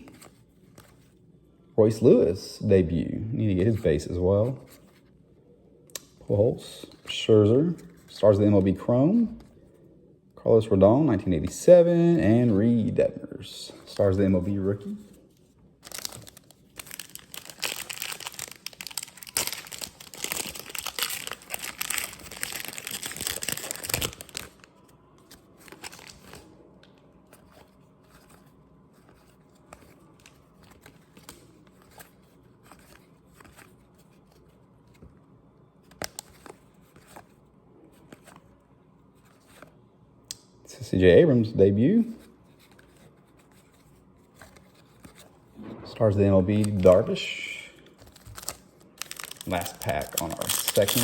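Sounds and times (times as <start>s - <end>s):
foil wrapper tearing and crinkling: 15.8s - 24.7s, 48.2s - 51.0s
cards rustling and clicking: 15.8s - 35.1s, 47.9s - 51.0s.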